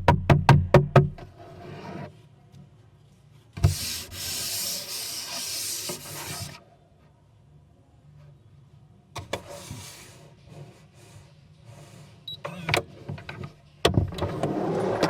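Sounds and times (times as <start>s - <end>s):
sharp wooden knocks: 0.0s - 1.2s
wood sliding against wood: 3.6s - 6.6s.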